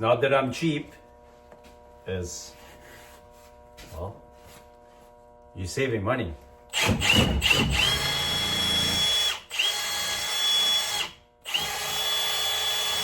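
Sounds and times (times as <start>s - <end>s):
electric drill whining: 6.7s - 13.0s.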